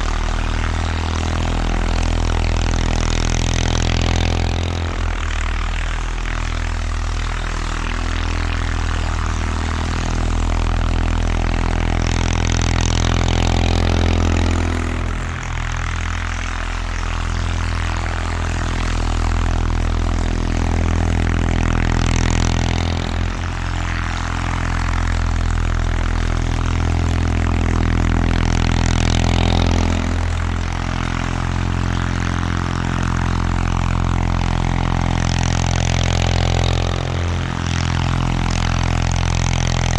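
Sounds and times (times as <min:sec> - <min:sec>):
garden tractor engine running: 0:00.0 - 0:39.9.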